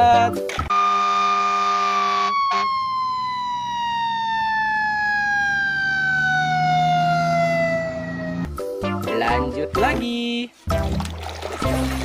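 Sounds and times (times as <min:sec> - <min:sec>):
fire engine siren winding down: 0:00.7 - 0:08.5.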